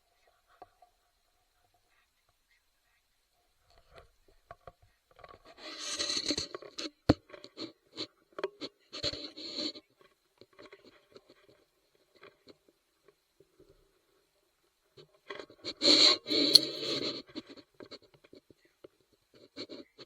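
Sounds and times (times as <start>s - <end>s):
close rustling and scraping: 5.3s - 6.9s, 15.3s - 18.1s.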